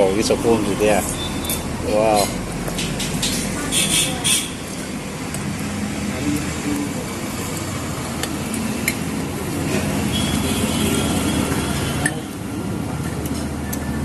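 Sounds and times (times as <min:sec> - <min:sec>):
cutlery clinking against a plate: 0:01.4 - 0:03.6.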